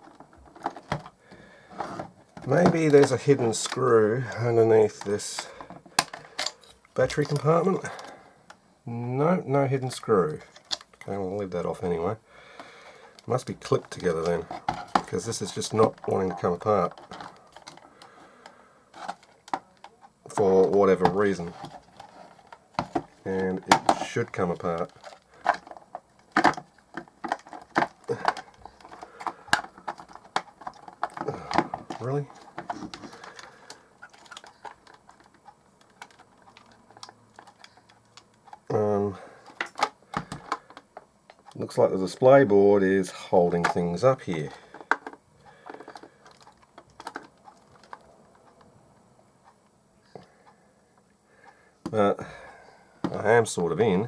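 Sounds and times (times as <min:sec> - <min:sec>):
hard plastic clicking and knocking: 0:00.0 - 0:03.9, 0:05.0 - 0:08.6, 0:12.5 - 0:38.7, 0:39.4 - 0:41.6, 0:43.6 - 0:48.7.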